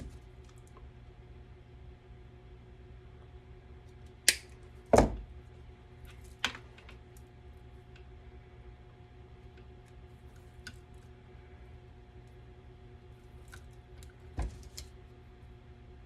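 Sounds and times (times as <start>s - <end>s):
low steady hum: 0.0s - 16.0s
thump: 5.0s - 5.2s, 14.4s - 14.6s.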